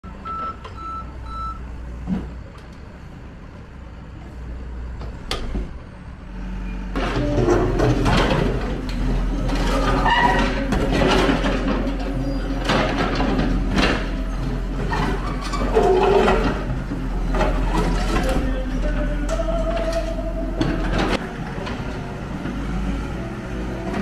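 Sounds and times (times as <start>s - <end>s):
reversing alarm beeping: 0.0s - 1.6s
diesel engine running: 0.0s - 24.0s.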